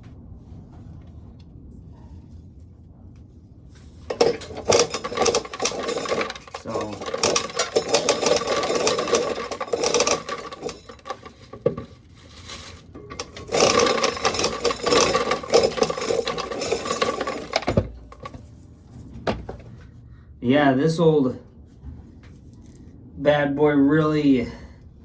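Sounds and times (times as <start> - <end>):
corn sheller rattling and grinding: 4.1 - 18.5, 19.3 - 19.8.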